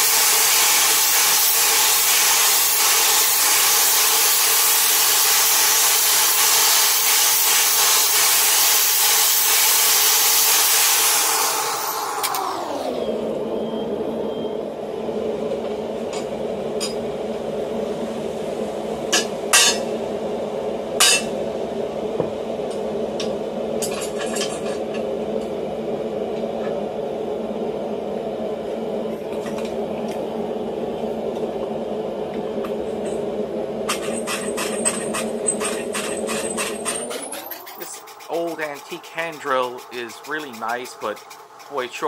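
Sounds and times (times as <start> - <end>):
electric motor hum: 10.5 - 18.1, 27.2 - 42.0
rapid clicks: 36.0 - 42.0.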